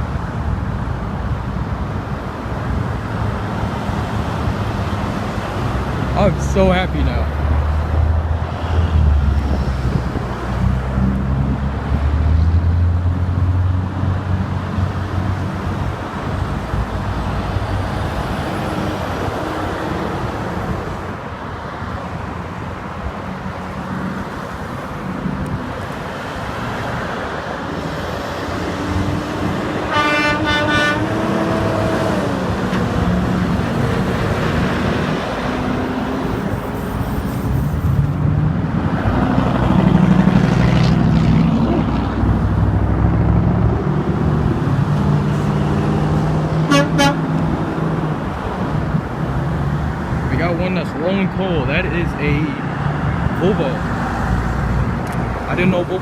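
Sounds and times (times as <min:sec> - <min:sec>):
heavy engine rumbling by: 0:00.0 - 0:21.4, 0:22.0 - 0:56.0
highway traffic passing: 0:00.0 - 0:56.0
car horn toot: 0:29.9 - 0:31.2, 0:46.7 - 0:47.3.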